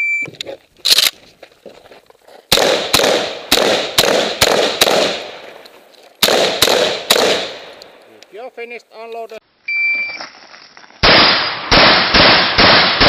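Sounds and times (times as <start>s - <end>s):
shotgun shots with echo: 2.5s - 5.4s, 6.2s - 7.7s, 11.0s - 13.0s.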